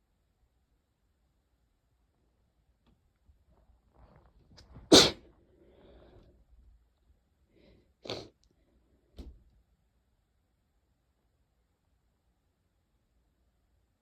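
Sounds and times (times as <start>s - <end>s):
person sneezing: 4.7s - 5.2s, 8.0s - 8.4s
faint breathing: 5.4s - 6.5s, 7.4s - 9.0s.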